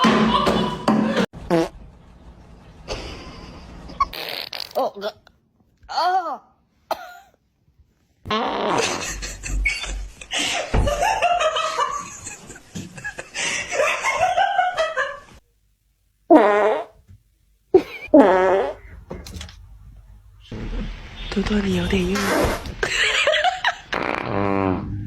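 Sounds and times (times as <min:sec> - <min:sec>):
farts: 0:01.5 - 0:01.8, 0:04.0 - 0:04.8, 0:08.3 - 0:09.2, 0:16.3 - 0:17.0, 0:18.1 - 0:18.9, 0:22.2 - 0:22.8, 0:23.9 - 0:25.0
laughter: 0:02.9 - 0:04.2, 0:08.8 - 0:15.4, 0:17.8 - 0:18.1, 0:22.8 - 0:24.0.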